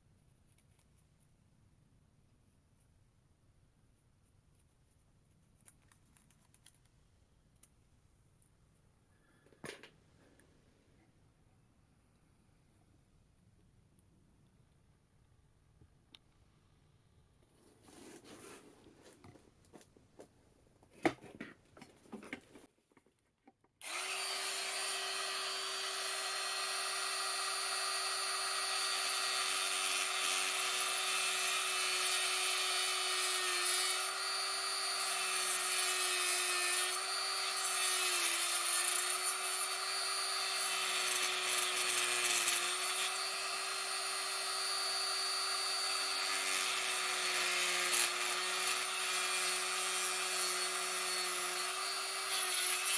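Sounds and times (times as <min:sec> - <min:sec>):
small high-speed power tool: 0:23.8 - 0:52.9.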